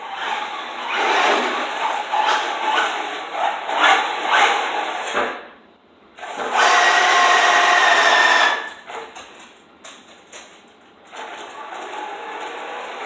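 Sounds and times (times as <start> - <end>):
rc car motor whining: 6.3 - 8.8.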